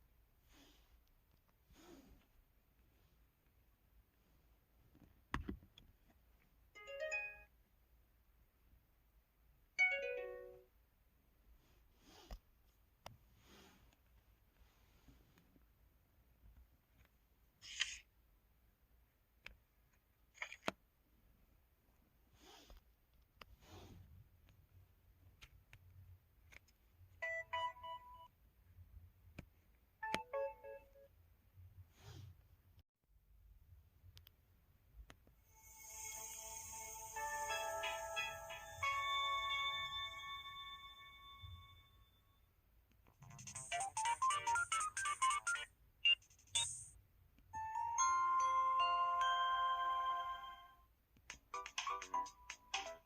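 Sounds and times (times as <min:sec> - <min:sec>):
electronic phone chime: 0:47.7 - 0:50.7.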